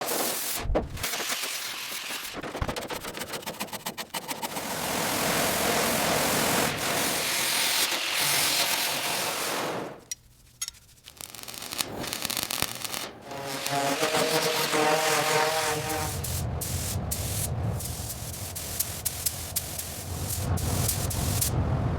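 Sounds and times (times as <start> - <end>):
repeated scraping strokes: 0.1 - 21.5
power tool whining: 13.2 - 16.3
steady rushing noise: 13.2 - 21.9.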